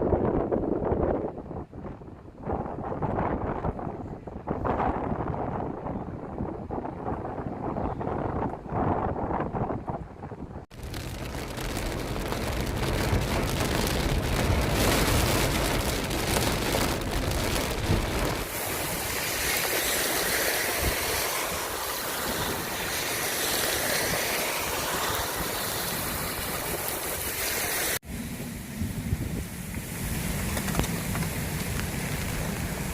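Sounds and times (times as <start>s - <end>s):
wind rumble on microphone: 0.0s - 32.9s
rain falling: 10.7s - 28.0s, 29.6s - 32.9s.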